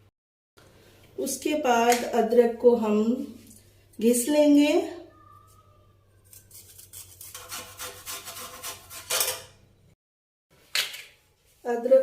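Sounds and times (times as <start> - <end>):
ginger grating on a grater: 6.2 - 9.3.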